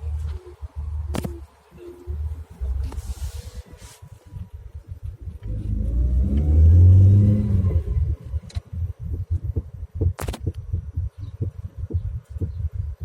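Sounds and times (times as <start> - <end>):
car engine revving: 4.6 - 9.4
sharp clicks: 10.0 - 10.7.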